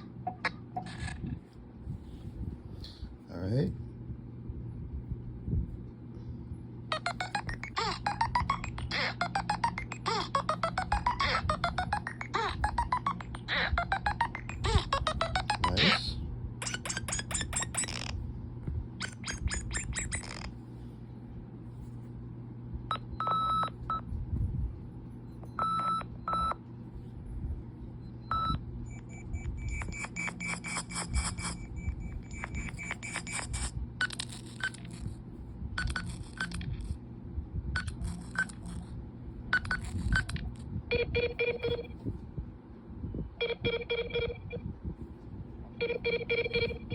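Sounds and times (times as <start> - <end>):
steady low hum: 0.0 - 46.9
chiming ringtone patterns: 7.0 - 15.6, 45.8 - 46.9
electronic ringtone beeps: 7.0 - 15.8, 28.3 - 34.2, 40.9 - 41.9, 43.4 - 44.6, 45.8 - 46.9
low ringtone: 7.0 - 15.8, 40.9 - 42.0, 43.4 - 44.6, 45.8 - 46.9.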